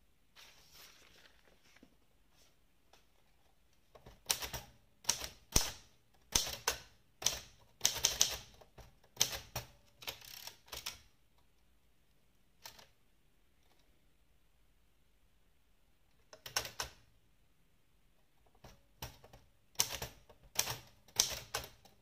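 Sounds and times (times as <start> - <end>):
typewriter keys striking: 4.2 - 8.6.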